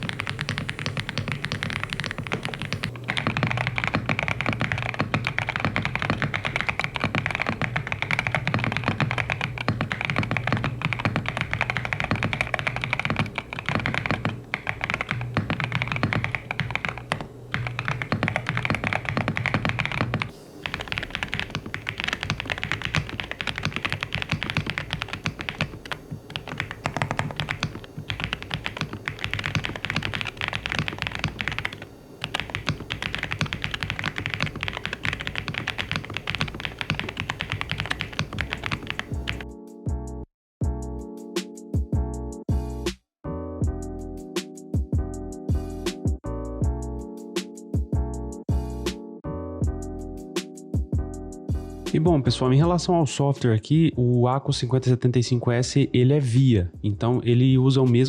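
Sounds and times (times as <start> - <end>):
typing on mechanical keyboard: 0.0 - 39.4.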